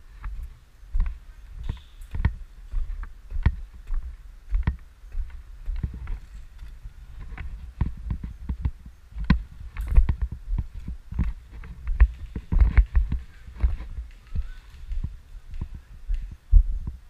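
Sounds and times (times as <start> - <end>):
footsteps: 0.0 - 17.0.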